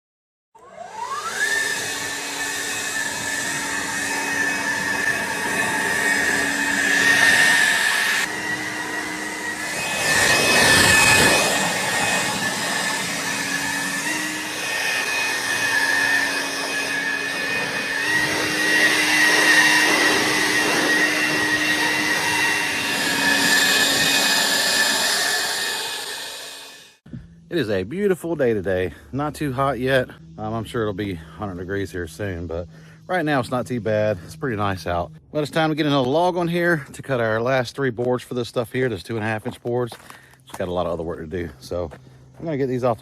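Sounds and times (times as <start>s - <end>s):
saw blade cutting log: 0.6s - 27.0s
sawmill engine whine: 0.6s - 43.0s.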